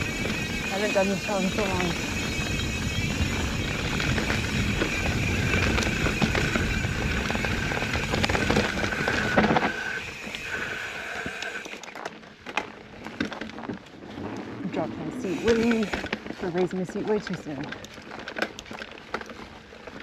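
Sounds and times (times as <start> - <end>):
freewheel buzzing: 0.0 - 14.2, 15.1 - 16.6
bike rattling over rocks: 0.0 - 20.0
bike tyres rumbling on dirt: 0.0 - 20.0.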